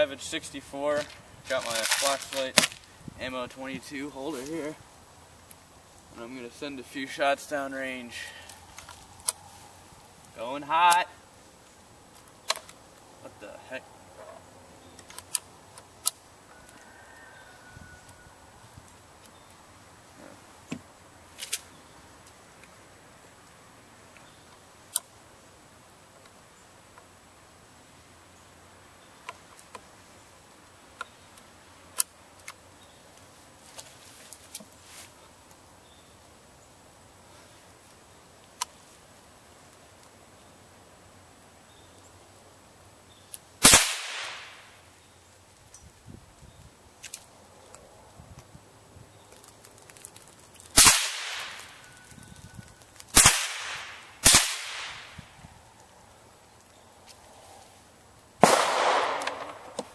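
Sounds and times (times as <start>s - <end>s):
rifle shots with echo: 43.6s - 44.6s, 50.8s - 51.6s, 53.2s - 55.1s, 58.4s - 59.8s.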